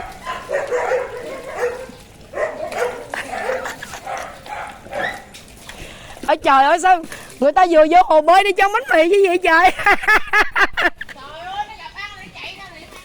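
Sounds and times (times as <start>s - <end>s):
dog barking: 0.0s - 5.3s.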